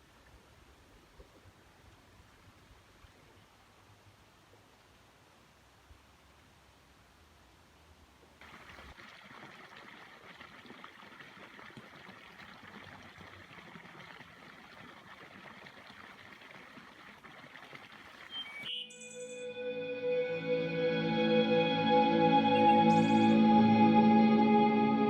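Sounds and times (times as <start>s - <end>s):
water running and trickling: 8.4s - 18.7s.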